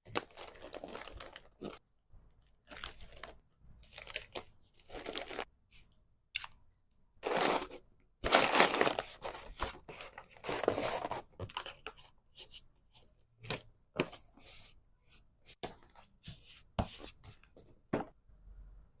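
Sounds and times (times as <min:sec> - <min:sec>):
packaging crinkling and tearing: 0:00.1 - 0:01.8, 0:02.7 - 0:05.5, 0:07.2 - 0:09.5.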